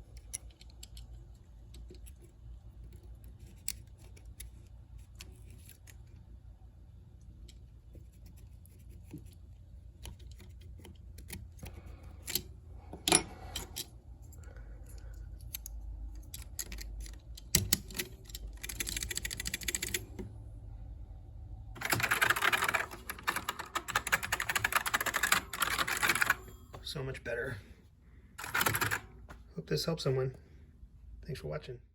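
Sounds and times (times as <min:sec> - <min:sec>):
computer keyboard typing: 0:16.2 - 0:20.2, 0:21.8 - 0:26.6, 0:28.4 - 0:29.2.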